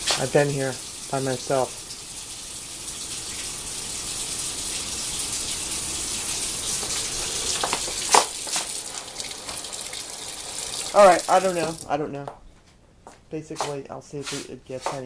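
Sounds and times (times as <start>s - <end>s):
water running from a tap: 0.0s - 11.9s.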